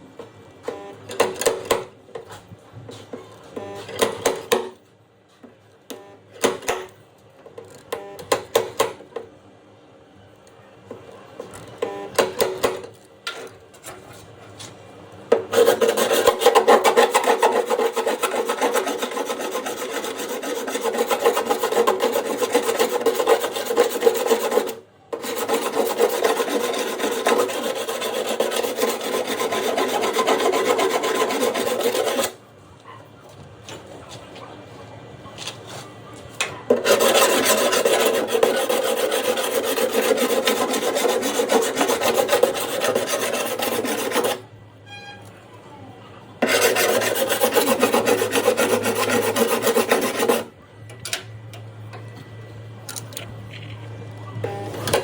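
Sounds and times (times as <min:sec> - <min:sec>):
abrasive rubbing on car panel: 0:15.5 - 0:32.4, 0:46.4 - 0:50.5.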